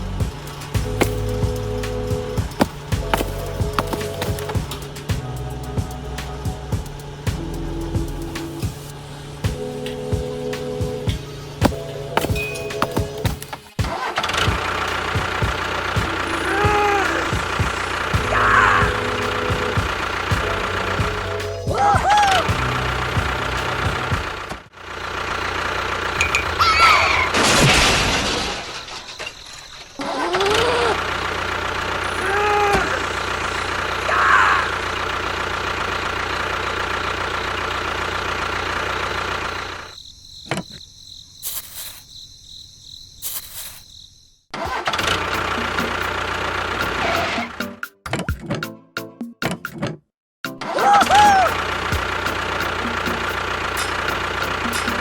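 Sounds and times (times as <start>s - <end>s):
vehicle engine humming: 0.0s - 26.6s, 30.6s - 40.0s, 44.7s - 47.6s, 51.2s - 55.0s.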